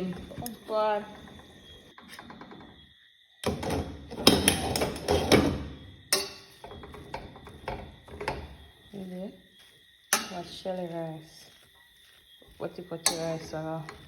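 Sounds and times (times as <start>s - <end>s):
cookware clattering and knocking: 3.4s - 8.5s.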